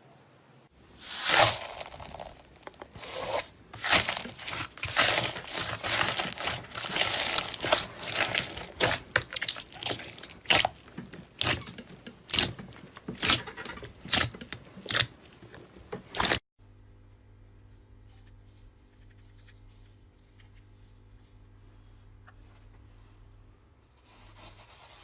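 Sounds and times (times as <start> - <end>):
slime squished by hand: 3.1 - 15.2.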